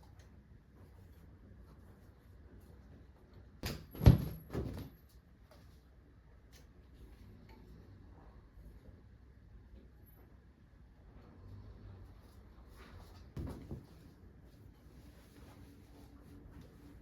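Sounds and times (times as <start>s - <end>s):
knocks and thump clatter: 3.6s - 5.0s.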